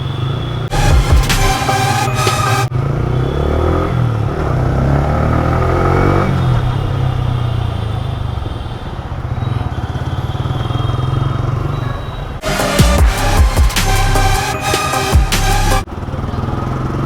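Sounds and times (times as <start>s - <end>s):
motorcycle engine revving: 0.2s - 8.5s, 12.4s - 17.0s.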